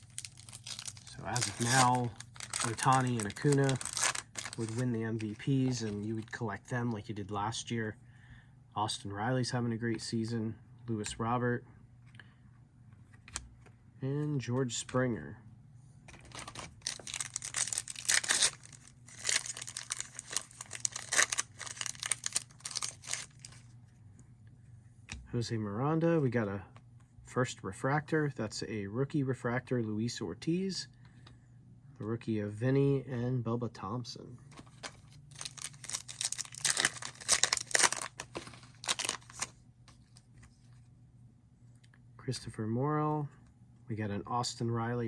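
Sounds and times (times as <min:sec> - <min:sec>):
foil wrappers tearing and crinkling: 0:00.0 - 0:06.3, 0:16.2 - 0:23.6, 0:34.6 - 0:39.5.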